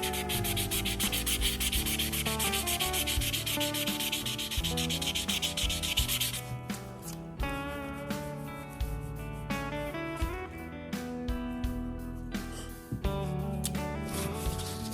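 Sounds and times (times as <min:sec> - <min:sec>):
sandpaper rubbing: 0:00.0 - 0:07.2, 0:14.0 - 0:14.9
faint guitar music: 0:00.0 - 0:14.9.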